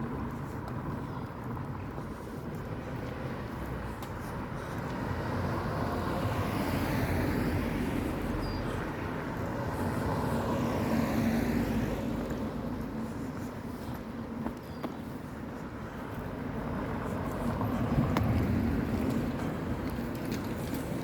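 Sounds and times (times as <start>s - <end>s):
cars passing close by: 0.0s - 21.0s.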